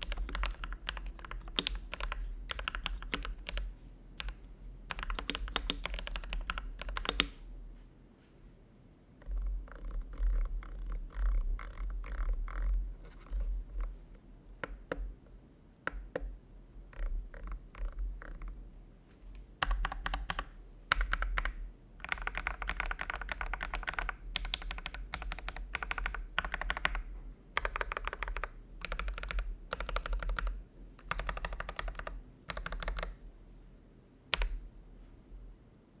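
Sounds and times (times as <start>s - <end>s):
mechanical keyboard typing: 0.0s - 7.3s, 9.2s - 12.8s, 16.9s - 18.6s, 19.6s - 33.2s, 34.3s - 34.6s.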